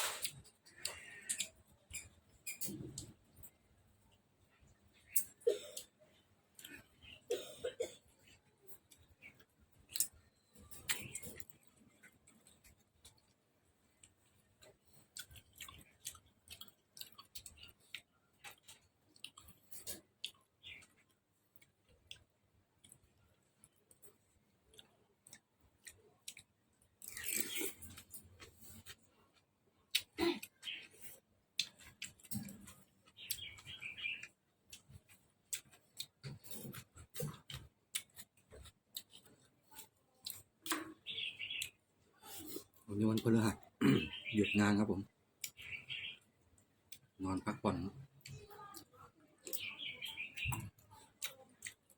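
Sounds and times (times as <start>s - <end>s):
person chewing: 0.0s - 3.6s, 8.2s - 43.3s, 45.4s - 45.6s, 50.4s - 51.9s.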